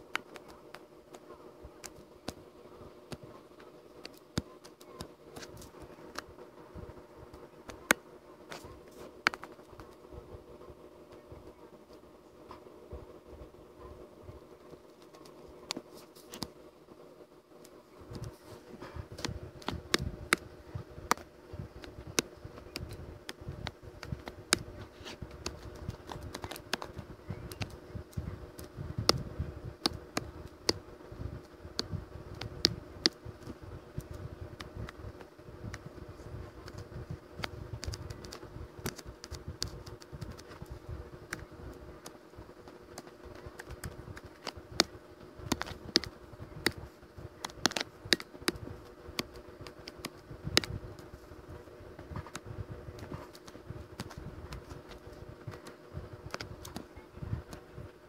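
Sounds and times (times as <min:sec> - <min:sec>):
irregular clicking and tapping: 0:07.3 - 0:10.0, 0:17.6 - 0:30.8, 0:31.4 - 0:51.2, 0:52.0 - 0:57.6.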